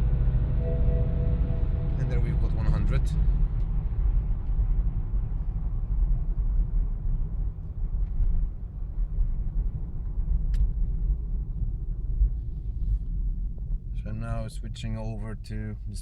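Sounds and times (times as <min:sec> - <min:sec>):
car engine and road noise: 0:00.0 - 0:16.0.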